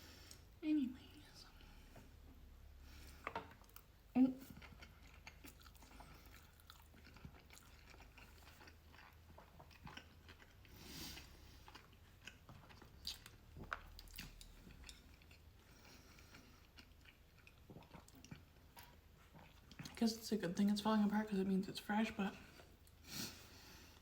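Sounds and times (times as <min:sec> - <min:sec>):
faint chewing: 0:01.5 - 0:20.2.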